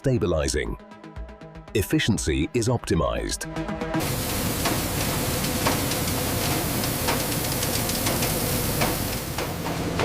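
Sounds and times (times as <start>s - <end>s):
vibrating cleaning deck hiss: 4.0s - 10.0s.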